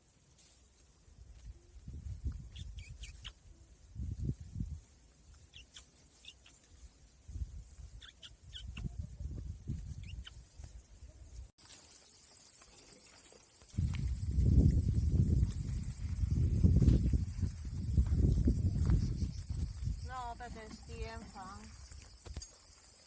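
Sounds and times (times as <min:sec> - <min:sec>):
birds chirping: 0:05.4 - 0:06.8, 0:07.9 - 0:09.0, 0:09.9 - 0:10.9.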